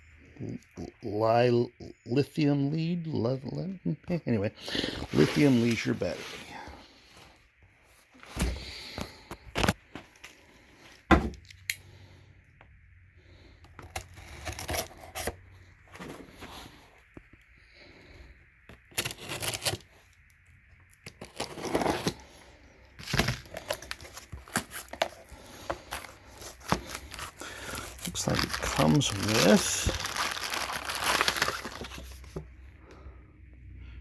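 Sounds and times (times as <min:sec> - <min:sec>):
cardboard box rustling and tearing: 0:13.9 - 0:15.4, 0:18.9 - 0:20.0, 0:21.1 - 0:22.2, 0:23.0 - 0:32.4.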